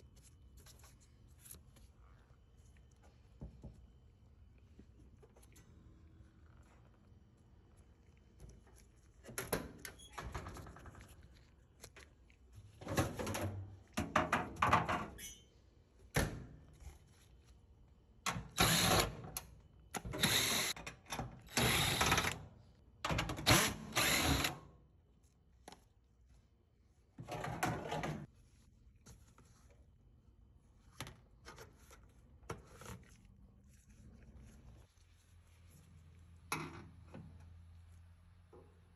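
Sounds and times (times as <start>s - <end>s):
power drill-driver bursts: 18.6s - 19.1s, 20.2s - 20.7s, 21.5s - 22.4s, 23.4s - 24.6s.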